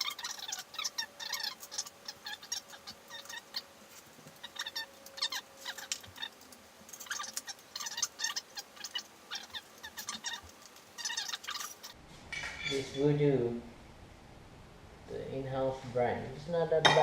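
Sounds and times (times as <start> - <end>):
rubber grip squeaking: 0.0 - 12.0.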